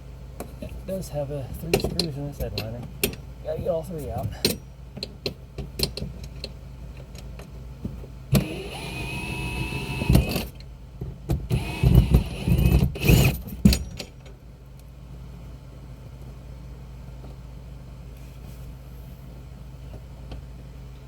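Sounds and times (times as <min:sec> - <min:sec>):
cordless drill-driver running: 0:08.4 - 0:10.4.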